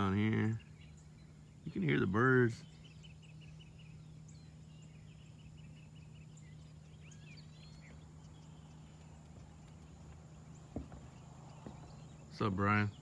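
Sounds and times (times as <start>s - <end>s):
birds chirping: 0.0s - 13.0s
low background hum: 0.0s - 13.0s.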